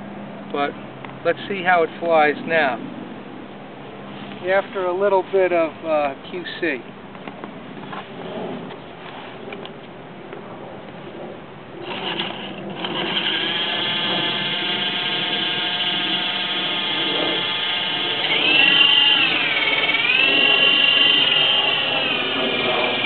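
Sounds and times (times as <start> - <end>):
toy helicopter motor whining: 11.8 - 23.0.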